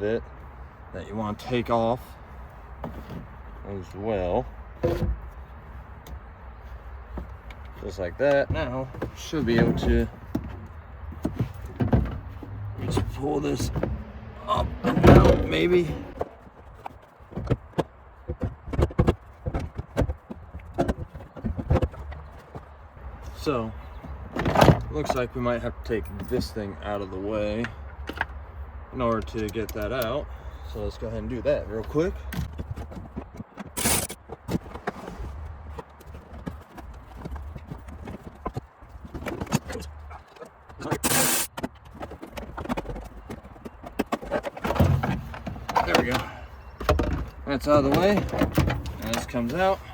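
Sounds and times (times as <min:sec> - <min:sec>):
tools clicking and knocking: 0:32.3 - 0:34.7.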